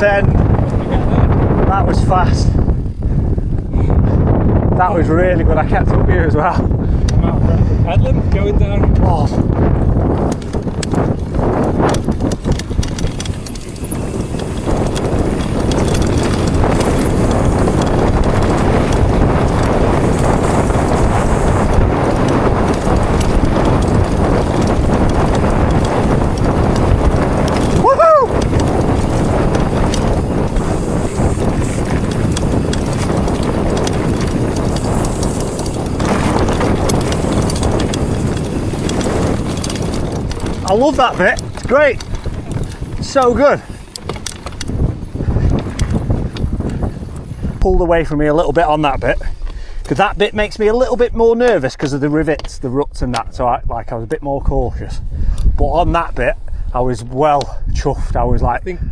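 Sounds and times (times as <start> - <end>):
wind rushing over microphone: 0.0 - 58.9
bike clattering: 8.3 - 54.2
tyres rumbling over stones: 10.2 - 47.6.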